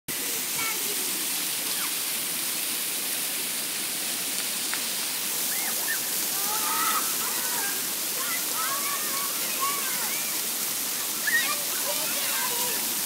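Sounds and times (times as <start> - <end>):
fountain water splashing: 0.1 - 13.0
faint voices: 5.6 - 13.0.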